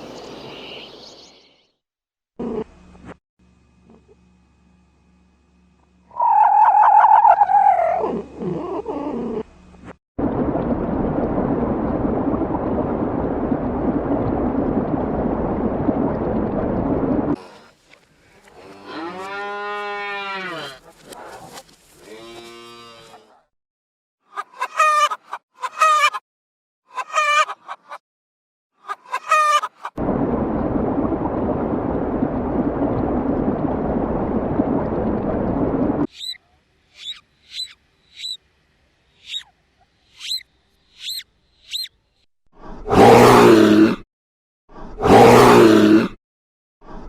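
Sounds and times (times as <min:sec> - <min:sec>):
high bird chirps: 0:36.1 - 0:36.4, 0:37.0 - 0:38.4, 0:39.2 - 0:39.5, 0:40.1 - 0:42.0.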